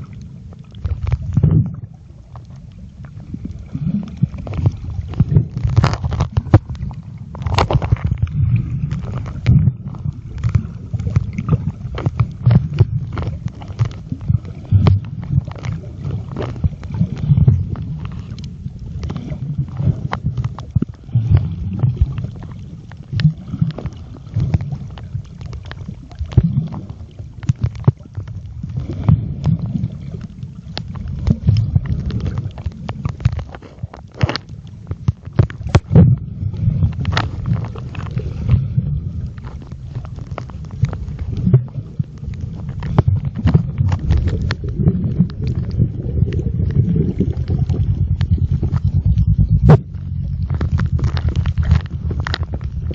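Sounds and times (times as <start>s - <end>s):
underwater rumble and gurgling: 0.0s - 52.9s.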